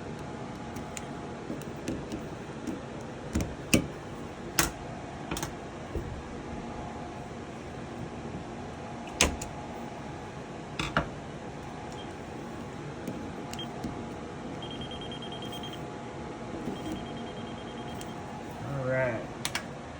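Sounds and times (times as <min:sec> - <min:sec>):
background hum: 0:00.0 - 0:19.9
high pulsing beep: 0:14.6 - 0:15.8, 0:16.7 - 0:18.2.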